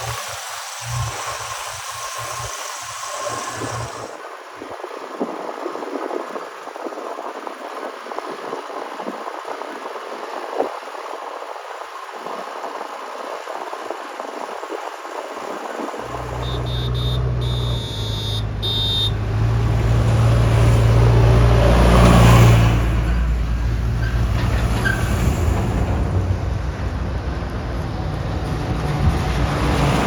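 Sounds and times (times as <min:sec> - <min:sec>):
heavy diesel engine running hard: 0:00.0 - 0:04.2, 0:16.0 - 0:30.0.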